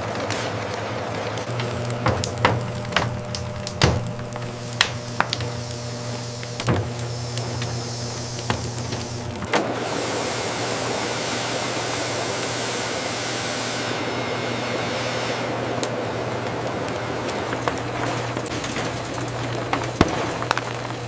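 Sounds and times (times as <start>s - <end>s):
machinery humming: 0.8s - 21.0s
rushing hiss: 1.5s - 14.0s.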